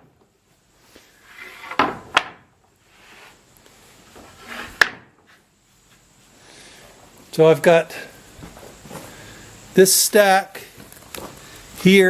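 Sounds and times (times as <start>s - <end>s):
wooden boards scraping: 1.1s - 3.4s, 4.1s - 5.4s
wooden boards knocking: 1.6s - 2.5s, 4.8s - 5.1s.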